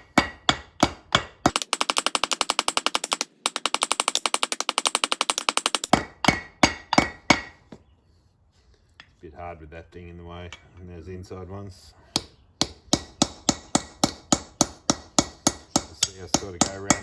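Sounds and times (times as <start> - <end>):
hammer blows on metal rivets: 0.0 - 7.8, 12.2 - 17.0.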